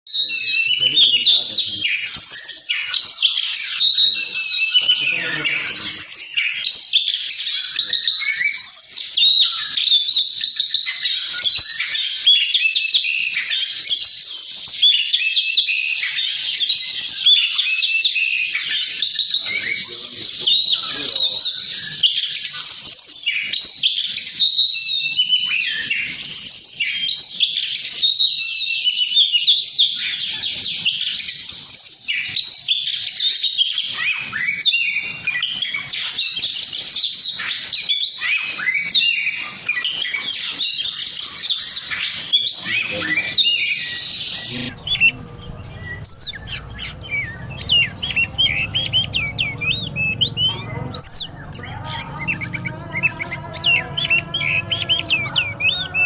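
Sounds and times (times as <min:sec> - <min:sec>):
bird singing whistled phrases: 0:00.1 - 0:56.0
low hum: 0:44.6 - 0:55.9
quick high chirps: 0:44.6 - 0:56.0.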